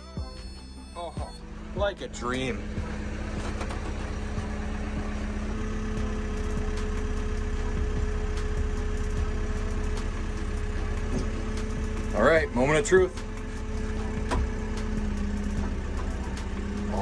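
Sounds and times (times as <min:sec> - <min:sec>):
backhoe engine idling: 0:00.0 - 0:17.0.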